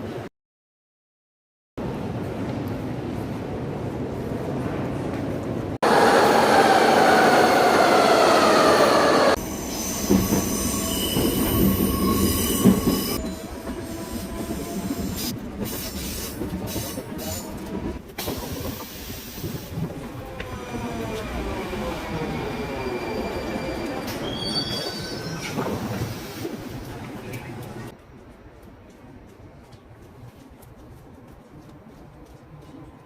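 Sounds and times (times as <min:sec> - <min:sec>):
metro train wheel squeal: 0:05.9 - 0:17.7, 0:20.6 - 0:26.5.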